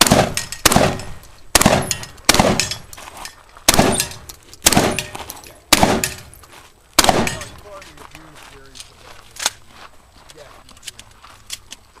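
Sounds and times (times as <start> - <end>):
shotgun blasts with echo: 0.0 - 2.8, 3.7 - 6.3, 7.0 - 7.7.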